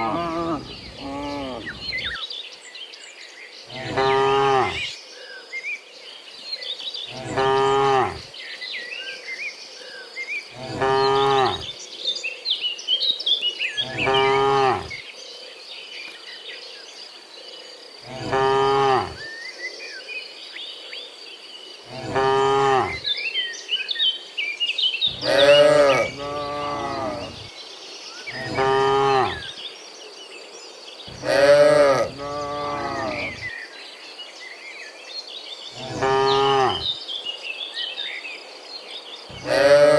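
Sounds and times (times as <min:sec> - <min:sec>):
cattle mooing: 0:00.0 - 0:02.1, 0:03.7 - 0:04.8, 0:07.2 - 0:08.2, 0:10.6 - 0:11.7, 0:13.8 - 0:15.0, 0:18.1 - 0:19.2, 0:21.9 - 0:23.0, 0:25.1 - 0:27.5, 0:28.4 - 0:29.4, 0:31.1 - 0:33.4, 0:35.8 - 0:36.9, 0:39.3 - 0:39.9
birds chirping: 0:00.0 - 0:05.5, 0:07.0 - 0:08.9, 0:09.6 - 0:12.8, 0:13.4 - 0:15.1, 0:18.0 - 0:19.8, 0:21.7 - 0:23.4, 0:24.9 - 0:30.0, 0:31.0 - 0:34.2, 0:35.4 - 0:37.1, 0:39.1 - 0:39.9
steady insect drone: 0:00.0 - 0:39.9.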